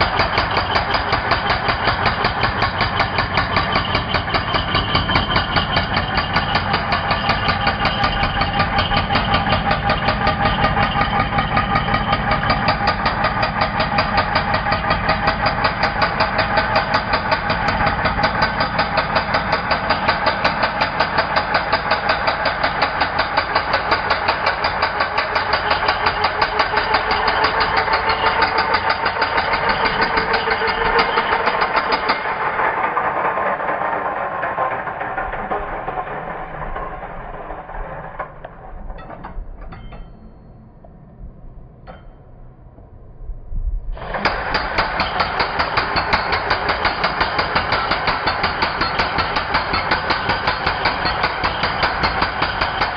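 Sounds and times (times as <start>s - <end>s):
electric concrete breaker hammering: 0.0s - 40.3s, 44.0s - 52.9s.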